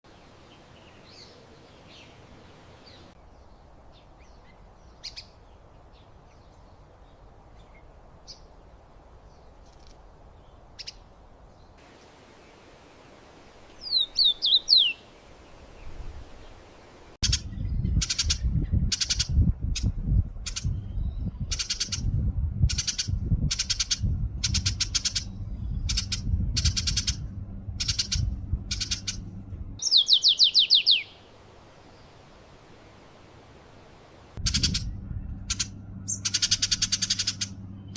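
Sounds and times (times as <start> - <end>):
bird calling: 11.8 - 19.3, 21.4 - 22.1, 22.7 - 32.4, 34.4 - 37.9
low rumble: 17.2 - 29.8, 34.3 - 37.9.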